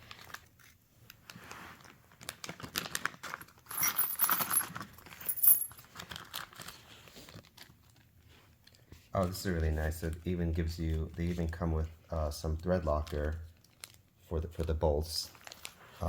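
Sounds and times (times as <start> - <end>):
metal hardware jangling: 3.7 - 5.9
plastic bag crinkling: 12.6 - 16.0.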